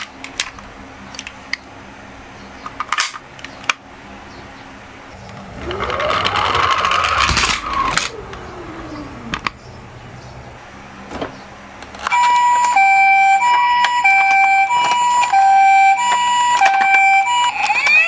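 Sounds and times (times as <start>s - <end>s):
toy car wheels whirring: 5.2s - 10.7s.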